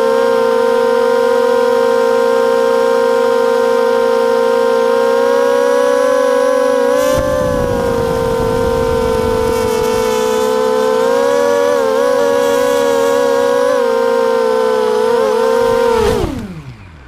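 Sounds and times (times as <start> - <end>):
quadcopter motors whining: 0.0 - 17.0
wind noise rush: 7.0 - 10.3.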